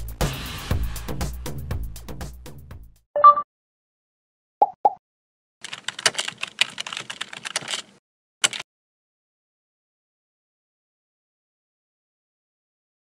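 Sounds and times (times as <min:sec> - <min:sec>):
electronic beep: 0:03.2 - 0:03.4
brief blips: 0:03.2 - 0:03.5
rapid clicks: 0:05.6 - 0:08.6.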